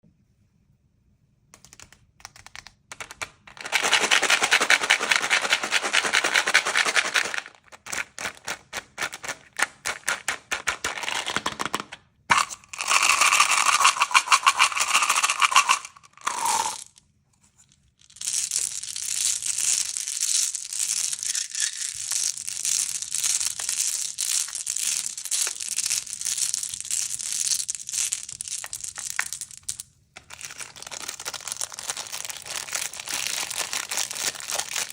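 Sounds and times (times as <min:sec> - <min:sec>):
crinkly packaging crackling: 0:30.2 - 0:34.9.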